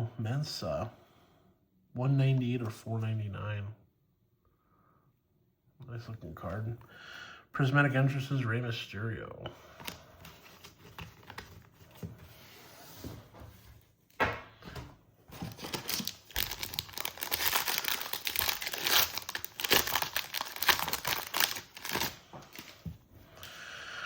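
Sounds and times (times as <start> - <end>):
wrapper crinkling: 15.3 - 22.9
wrapper tearing: 15.4 - 22.8.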